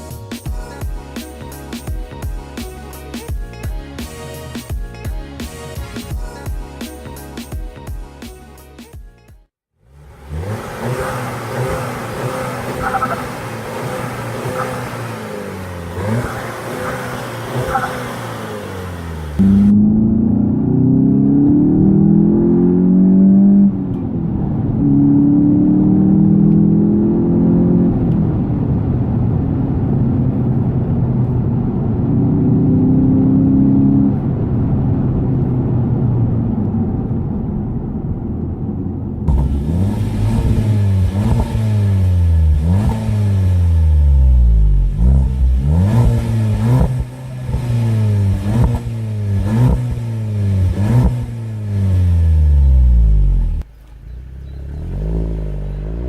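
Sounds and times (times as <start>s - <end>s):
car engine accelerating: 9.8s - 56.0s.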